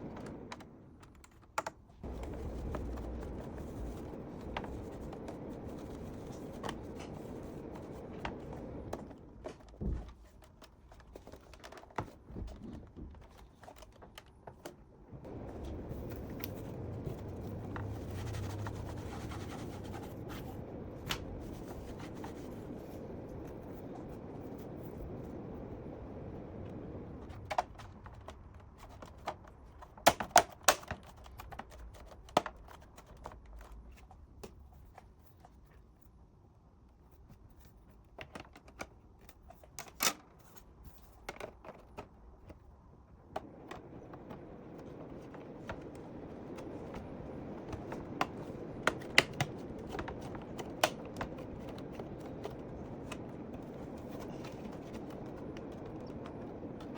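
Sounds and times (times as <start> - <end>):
low rushing background: 2.0 - 9.4, 15.0 - 27.5.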